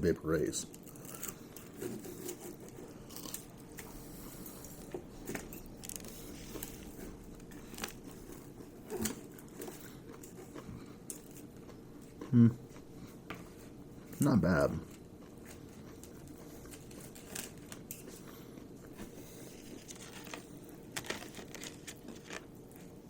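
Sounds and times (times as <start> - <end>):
person chewing food: 0.8 - 23.0
low voice hum: 12.3 - 12.7.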